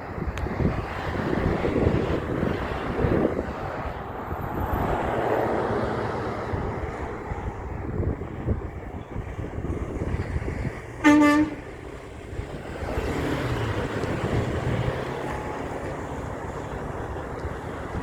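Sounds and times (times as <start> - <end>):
traffic rumble: 0.0 - 18.0
truck passing by: 0.0 - 18.0
truck horn blast: 11.0 - 11.8.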